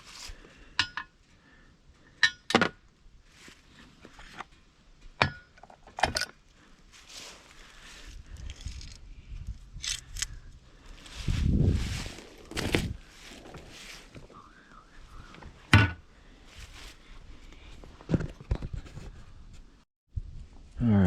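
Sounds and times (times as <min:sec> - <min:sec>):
low rumbling handling noise: 0:03.6 - 0:19.8.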